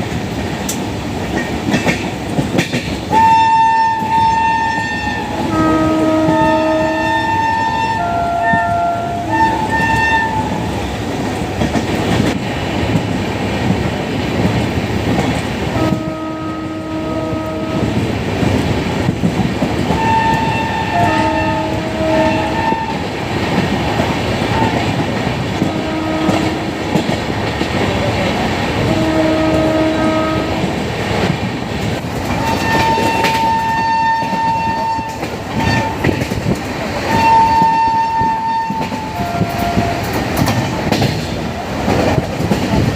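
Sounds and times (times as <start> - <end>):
train rumble: 0.0 - 42.9
locomotive horn blasts: 3.1 - 10.7, 15.8 - 18.0, 19.9 - 23.1, 25.6 - 26.8, 28.8 - 30.7, 32.4 - 36.2, 37.1 - 40.1.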